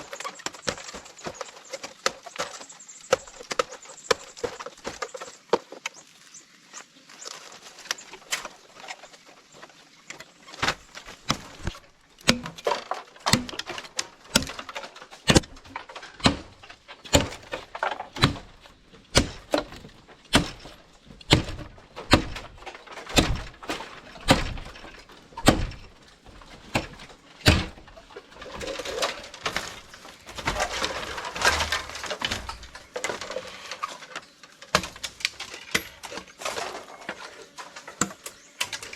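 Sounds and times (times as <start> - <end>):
rustling scraping noise: 0.0 - 38.0
hand tool striking: 10.6 - 12.7, 13.3 - 30.6.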